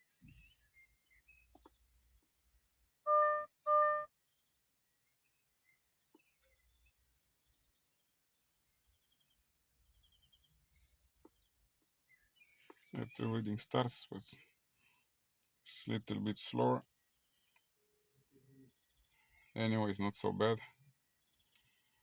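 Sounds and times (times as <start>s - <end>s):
faint high chirps: 3.1s - 4.1s
short electronic beeps: 3.1s - 4.1s.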